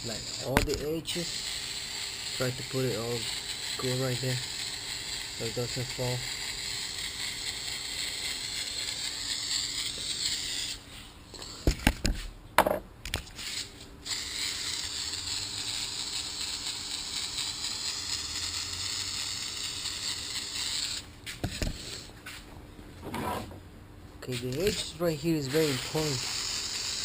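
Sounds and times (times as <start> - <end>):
aerosol can spraying: 0.0 - 12.3, 13.4 - 22.4, 24.3 - 27.0.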